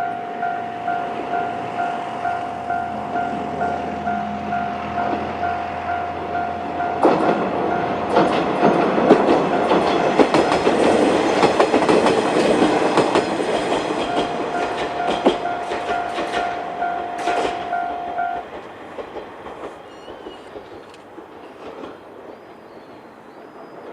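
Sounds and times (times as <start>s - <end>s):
level crossing bell ringing: 0.0s - 8.0s, 13.9s - 18.6s
diesel train passing: 0.0s - 23.9s
wheels clicking over rail joints: 1.1s - 23.9s.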